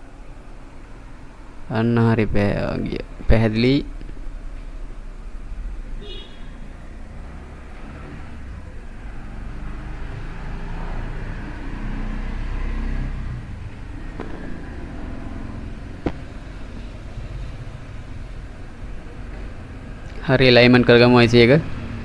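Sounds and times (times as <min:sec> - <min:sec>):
low background rumble: 0:00.0 - 0:07.7, 0:13.1 - 0:21.4.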